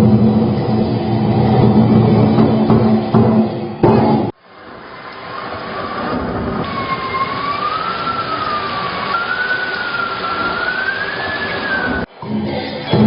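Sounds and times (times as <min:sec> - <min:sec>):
steady hiss: 0:04.3 - 0:13.0.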